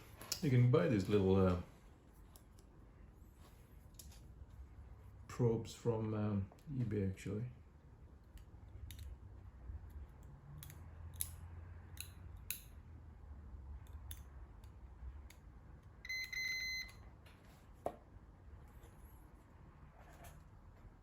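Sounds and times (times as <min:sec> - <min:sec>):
multimeter continuity beep: 0:16.0 - 0:17.0.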